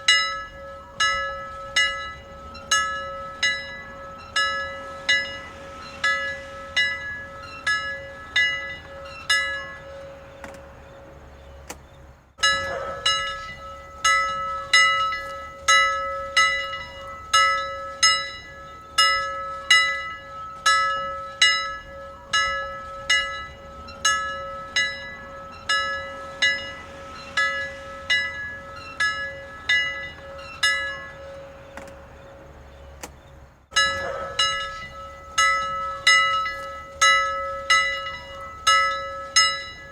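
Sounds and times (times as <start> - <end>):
sustained hum: 0.0 - 39.9
bell struck repeatedly: 12.4 - 26.8, 33.7 - 39.9.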